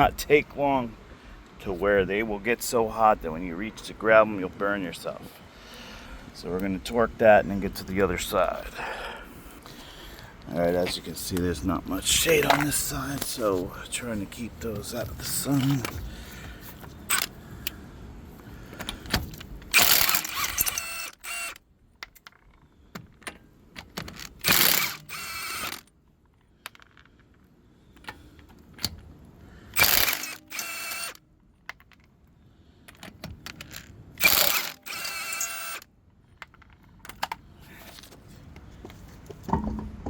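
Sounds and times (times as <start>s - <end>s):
torque wrench ratchet clicking: 19.7s - 21.6s, 24.4s - 25.9s, 29.8s - 31.2s, 34.2s - 35.8s
small clicks and knocks: 25.6s - 29.1s, 31.1s - 32.2s, 36.2s - 40.0s.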